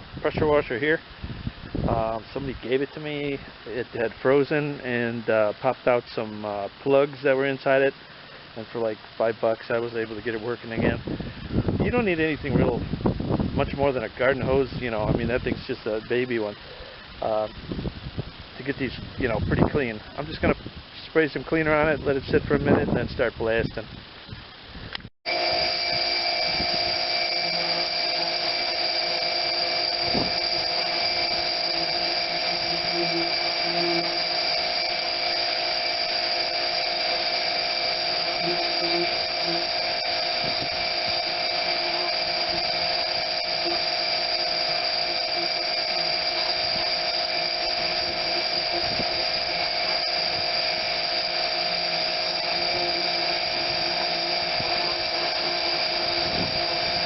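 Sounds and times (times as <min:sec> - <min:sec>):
pressure washer motor whine: 0:00.0 - 0:16.6, 0:25.3 - 0:57.0
water spray hiss: 0:25.4 - 0:57.0.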